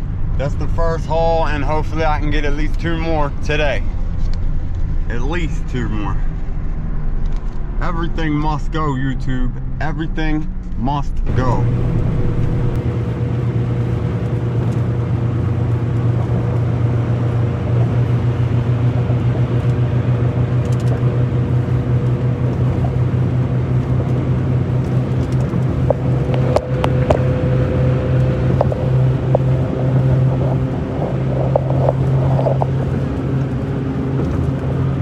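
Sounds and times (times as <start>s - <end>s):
truck engine and road drone: 0.0s - 35.0s
sharp clicks: 20.6s - 21.1s, 24.8s - 27.4s.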